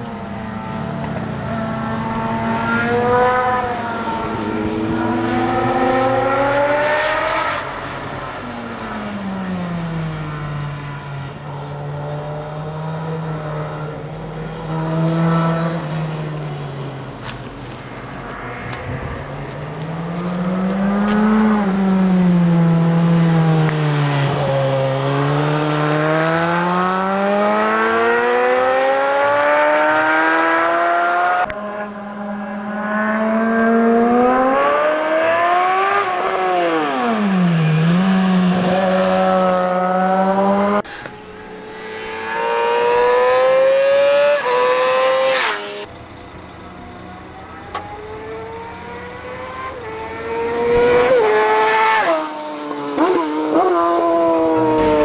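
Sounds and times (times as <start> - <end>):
sport motorcycle engine revving: 18.8 - 45.9, 46.8 - 55.0.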